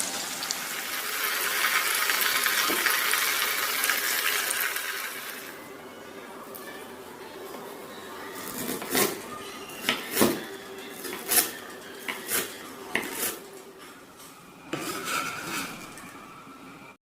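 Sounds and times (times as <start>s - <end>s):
utensils clinking against dishes: 8.3s - 16.5s.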